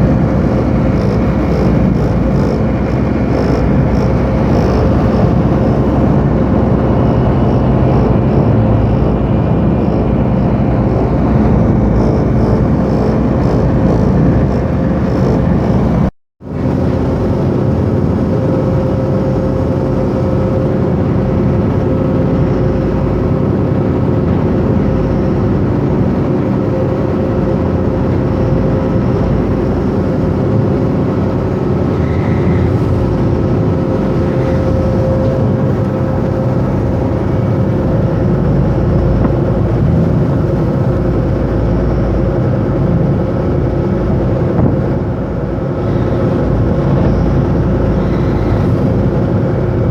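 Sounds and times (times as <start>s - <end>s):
ship engine droning: 0.0s - 49.9s.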